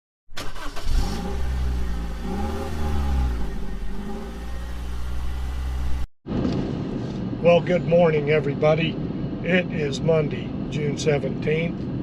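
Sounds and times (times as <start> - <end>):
car engine rumbling: 0.3 - 12.0.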